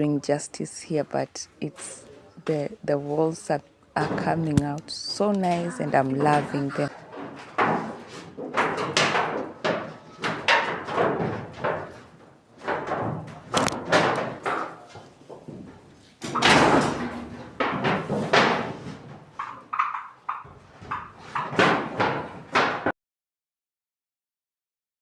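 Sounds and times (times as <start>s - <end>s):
building work knocks and scrapes: 5.5s - 22.9s.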